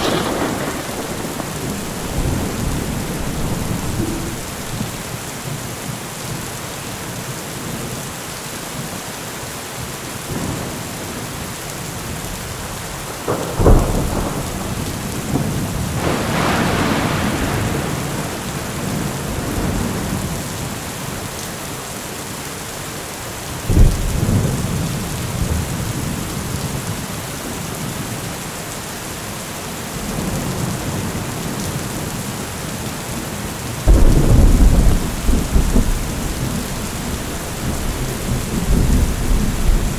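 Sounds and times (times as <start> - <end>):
thunder claps and rumbling: 0.0 - 5.5, 12.0 - 21.2, 23.7 - 27.1, 30.0 - 39.9
heavy rain falling: 0.0 - 39.9.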